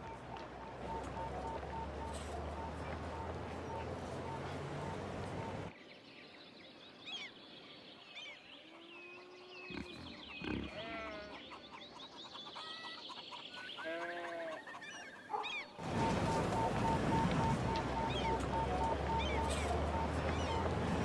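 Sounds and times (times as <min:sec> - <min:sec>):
honking bird call: 0:00.0 - 0:05.7, 0:13.5 - 0:21.0
birds chirping: 0:00.0 - 0:21.0
long held bird call: 0:12.6 - 0:21.0.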